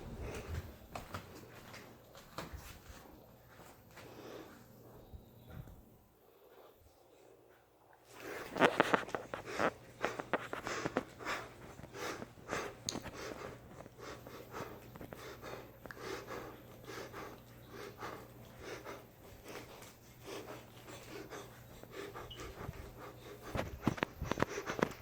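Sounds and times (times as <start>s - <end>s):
man breathing hard: 9.3s - 25.0s.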